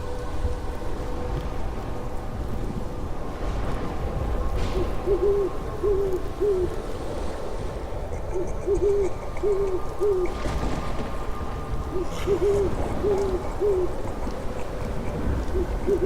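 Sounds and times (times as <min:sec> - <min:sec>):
owl hooting: 0:04.7 - 0:16.0.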